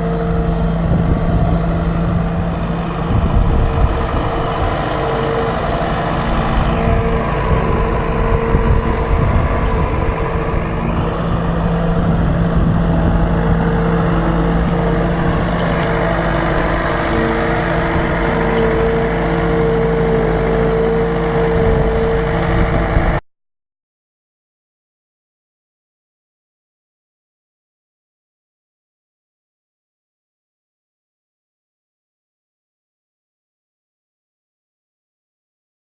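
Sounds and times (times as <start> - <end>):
machinery whine: 0.0 - 23.2
tractor engine running: 0.0 - 23.2.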